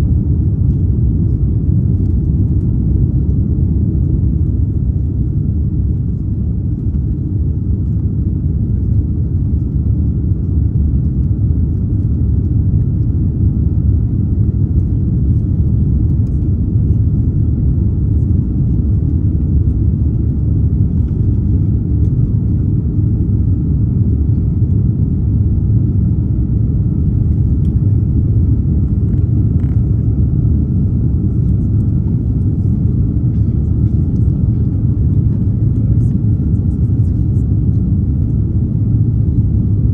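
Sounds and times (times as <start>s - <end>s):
faint steady whine: 0.0s - 39.9s
low rumble of engines and airflow: 0.0s - 39.9s.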